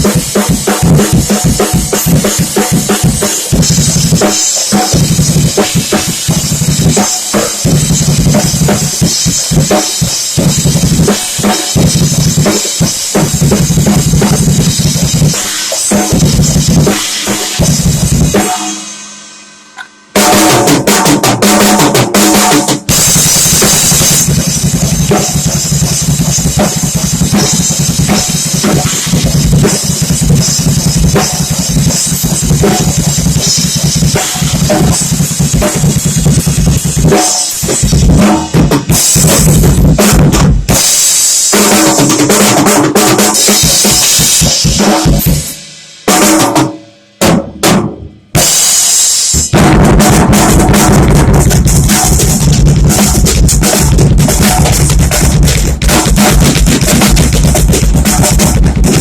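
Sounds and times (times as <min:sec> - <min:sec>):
drum kit played loudly: 0:00.0 - 0:59.0.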